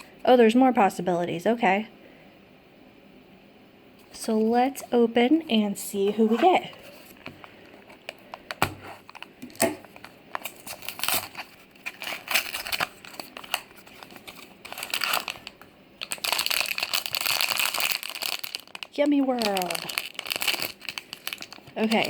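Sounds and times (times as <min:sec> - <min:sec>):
packaging crinkling and tearing: 0:06.6 - 0:22.0.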